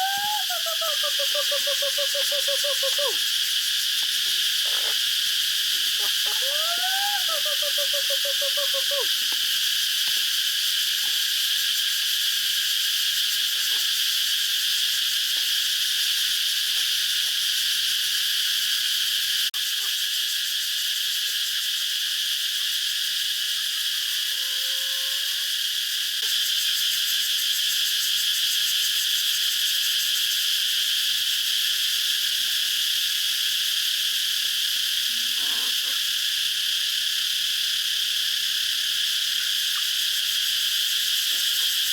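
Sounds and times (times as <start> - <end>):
insects chorus shrill pulsing: 0.0 - 14.9, 17.8 - 41.9
faint animal calls: 4.6 - 5.1, 5.8 - 9.1, 35.1 - 36.1.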